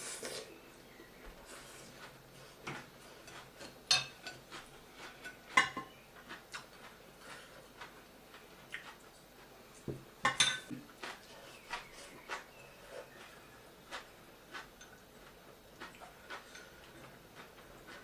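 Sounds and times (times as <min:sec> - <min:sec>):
utensils clinking against plates: 0:03.3 - 0:04.4, 0:10.2 - 0:10.8.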